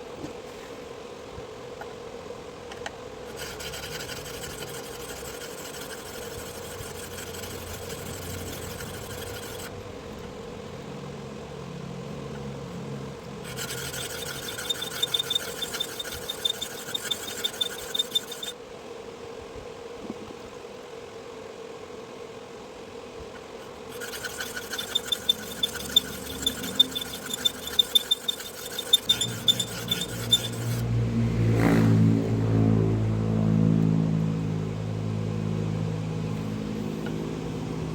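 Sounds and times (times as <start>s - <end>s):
sharpening machine motor humming: 3.2s - 9.8s, 13.2s - 18.6s, 23.6s - 30.9s
blade grinding with gritty scraping: 3.2s - 10.3s, 12.3s - 18.6s, 23.4s - 30.9s
low engine-like drone: 3.3s - 18.5s, 23.9s - 37.9s.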